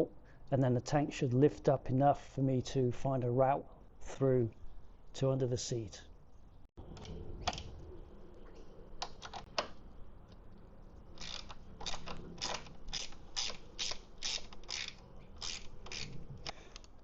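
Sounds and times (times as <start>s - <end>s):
ratchet wrench clicking: 11.2s - 16.2s.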